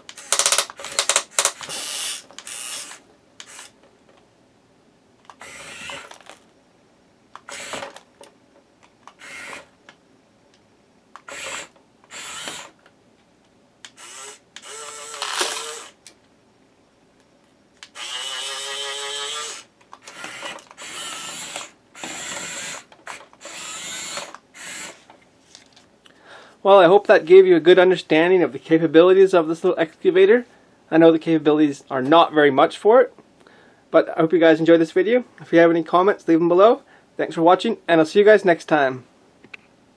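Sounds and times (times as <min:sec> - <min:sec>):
small electric motors whirring: 0:00.1 - 0:03.8, 0:05.3 - 0:06.4, 0:07.4 - 0:08.0, 0:09.1 - 0:09.7, 0:11.2 - 0:12.8, 0:13.9 - 0:16.0, 0:17.8 - 0:25.1.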